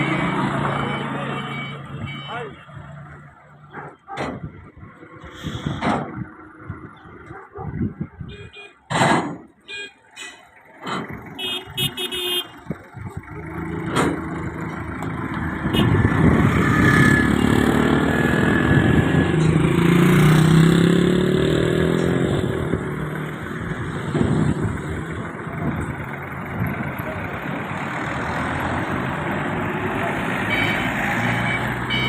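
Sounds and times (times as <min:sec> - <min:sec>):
large engine revving: 0:12.9 - 0:32.0.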